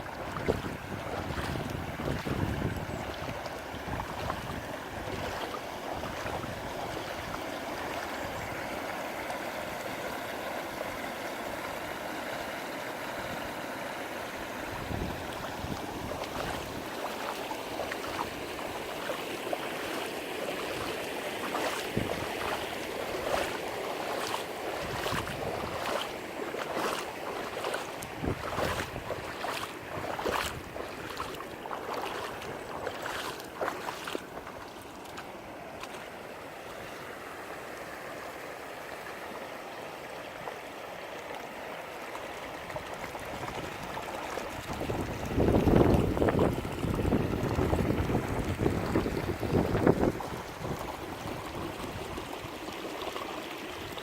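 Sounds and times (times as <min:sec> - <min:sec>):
wind on microphone: 0:00.0 - 0:07.4, 0:14.6 - 0:17.0, 0:21.6 - 0:23.6, 0:24.2 - 0:26.1, 0:28.0 - 0:31.4, 0:44.5 - 0:52.3
floodwater rushing: 0:00.0 - 0:54.0.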